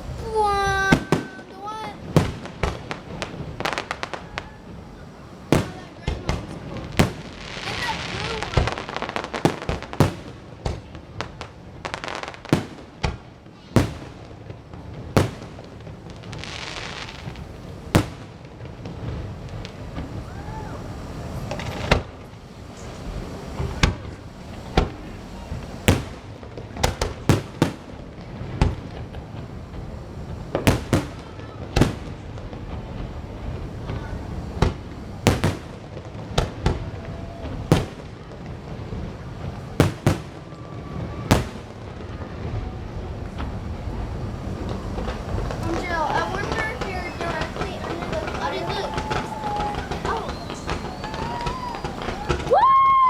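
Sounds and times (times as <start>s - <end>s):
fireworks bangs: 0.0s - 53.0s.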